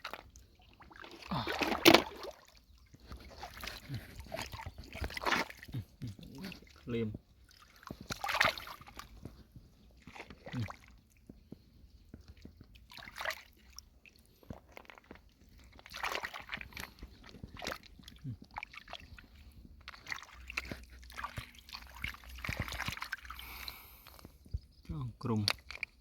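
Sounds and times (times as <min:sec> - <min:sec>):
water sloshing and splashing: 0:00.0 - 0:26.0.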